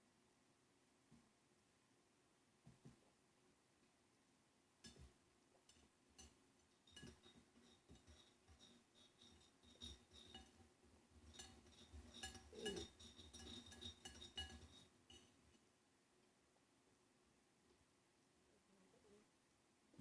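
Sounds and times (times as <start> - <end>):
cutlery clinking against dish: 4.8 - 5.1, 5.7 - 10.6, 11.2 - 15.4.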